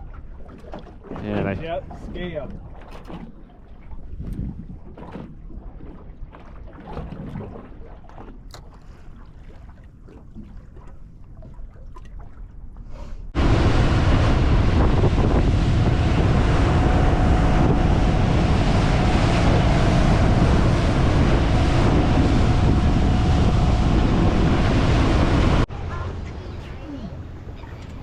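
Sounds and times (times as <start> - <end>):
water rushing: 0.0 - 4.0, 13.4 - 28.0
wind buffeting microphone: 3.9 - 5.5, 13.3 - 28.0
faint engine whine: 13.4 - 28.0.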